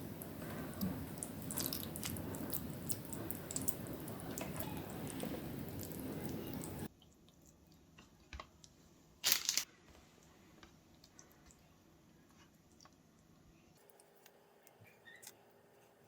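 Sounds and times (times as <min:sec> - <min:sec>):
crinkling crunch: 0:09.2 - 0:09.7.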